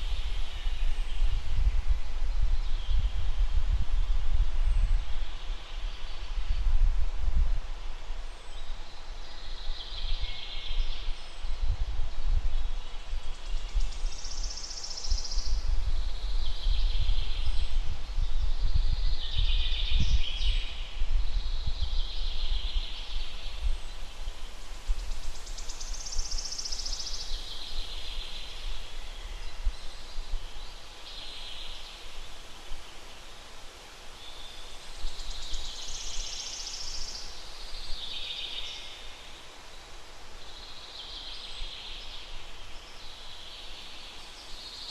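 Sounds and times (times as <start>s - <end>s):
wind buffeting microphone: 0.0s - 8.2s, 9.6s - 14.2s, 15.0s - 25.6s
songbirds singing: 8.3s - 44.9s.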